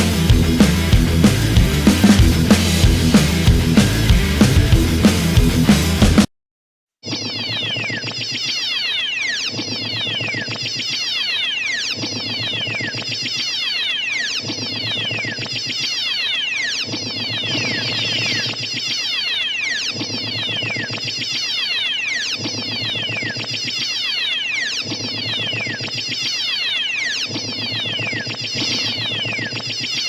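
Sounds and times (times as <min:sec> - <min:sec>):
pulsing low hum: 0:00.0 - 0:06.3
laser gun zaps: 0:13.8 - 0:30.0.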